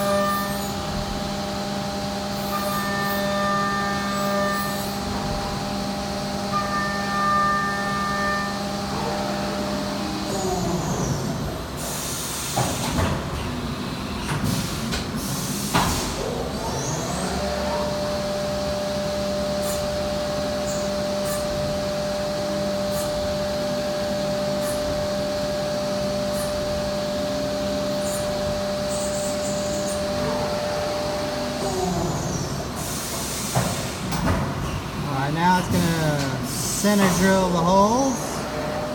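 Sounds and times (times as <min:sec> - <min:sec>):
pneumatic hissing and clunking: 0:11.8 - 0:16.2, 0:32.2 - 0:34.9, 0:35.7 - 0:37.2.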